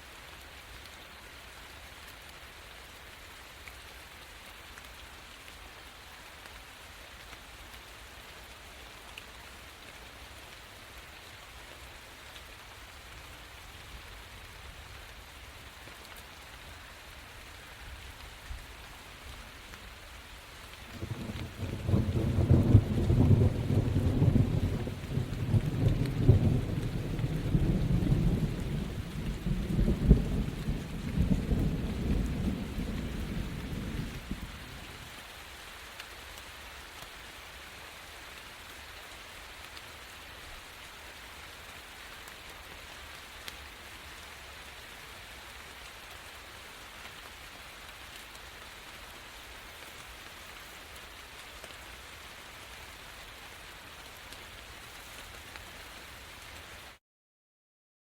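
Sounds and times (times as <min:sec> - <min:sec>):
rain falling: 0:00.0 - 0:57.0
thunder rumbling: 0:20.9 - 0:34.8.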